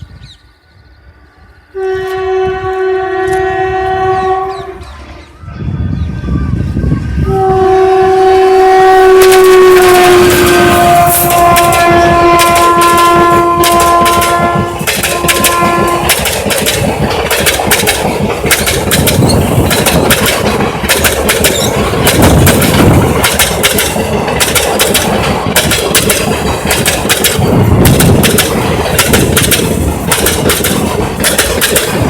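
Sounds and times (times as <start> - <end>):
train rumble: 0.0 - 32.0
train wheels clattering on rails: 8.1 - 32.0.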